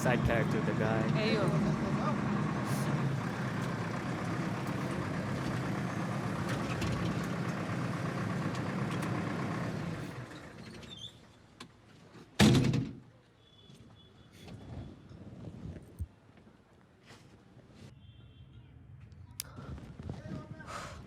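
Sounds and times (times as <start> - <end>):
vehicle engine running: 0.0 - 10.6
loud thunk: 12.4 - 13.0.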